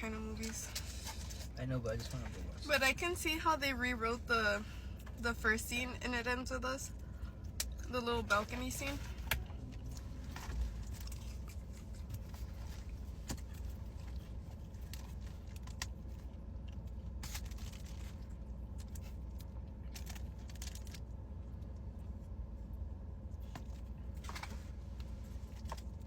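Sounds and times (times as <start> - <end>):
steady low rumble: 0.0 - 26.0
chewing and food handling: 6.9 - 26.0.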